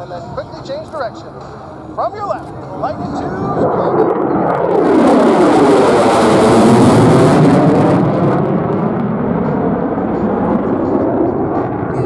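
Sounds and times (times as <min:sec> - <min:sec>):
fighter jet engine roaring past: 0:00.0 - 0:12.0.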